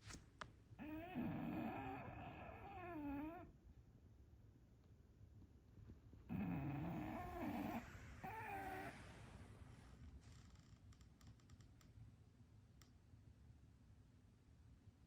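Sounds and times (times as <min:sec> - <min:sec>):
dog whimpering in sleep: 0:00.8 - 0:03.6, 0:06.3 - 0:09.2.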